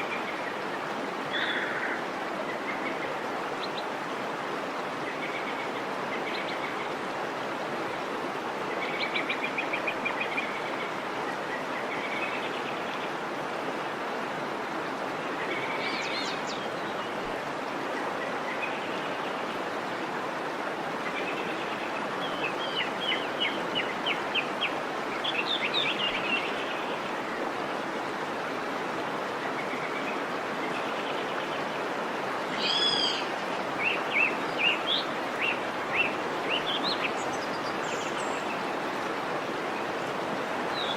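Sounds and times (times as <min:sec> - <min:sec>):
waterfall rushing: 0:00.0 - 0:40.9
birds chirping and trilling: 0:32.6 - 0:38.8.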